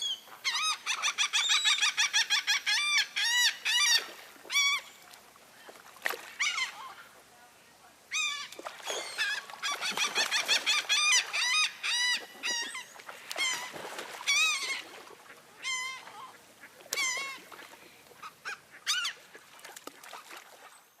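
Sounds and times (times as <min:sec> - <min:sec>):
bird calling: 0:00.0 - 0:07.2, 0:08.1 - 0:19.6.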